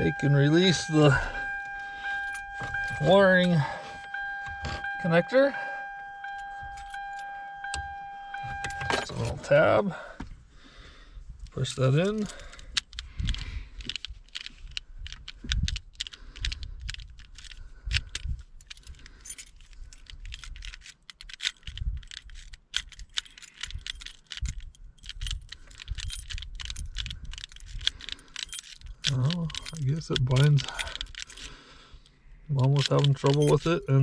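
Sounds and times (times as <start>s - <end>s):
key ring jangling: 0.0s - 5.0s, 6.0s - 9.4s, 11.5s - 34.0s
plastic and metal clicks: 32.6s - 33.9s.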